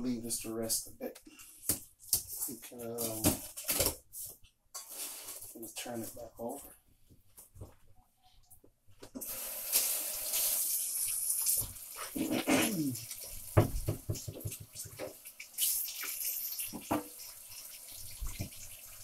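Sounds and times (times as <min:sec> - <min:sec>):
water running into a sink: 0:09.2 - 0:19.0.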